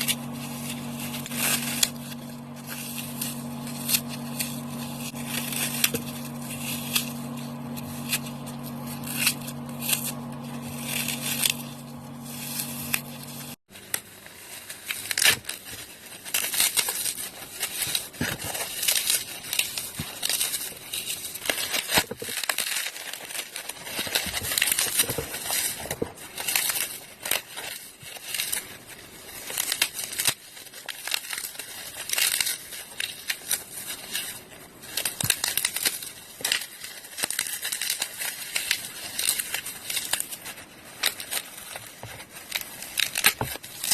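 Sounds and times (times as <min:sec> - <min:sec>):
low hum: 0:00.0 - 0:13.6
floral foam crunching: 0:00.0 - 0:43.9.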